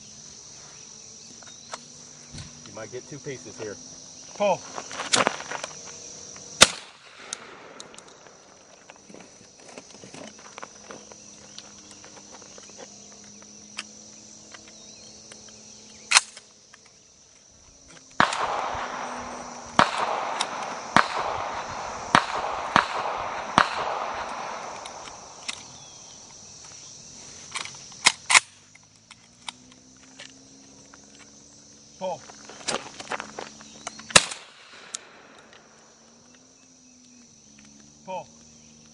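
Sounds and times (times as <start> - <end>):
shotgun shots: 6.6 - 8.2, 18.2 - 26.2, 34.1 - 35.4
rolling echo: 6.6 - 9.2, 18.1 - 26.4, 34.1 - 35.9.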